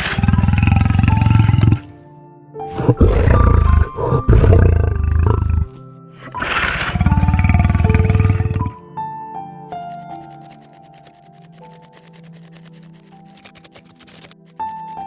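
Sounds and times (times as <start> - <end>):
large animal roaring: 0.0 - 1.9, 2.7 - 8.8
background music: 0.0 - 15.0.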